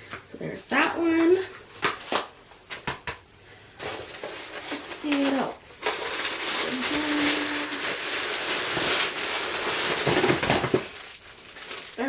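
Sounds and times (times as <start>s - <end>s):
packaging rustling and crinkling: 3.8s - 12.0s.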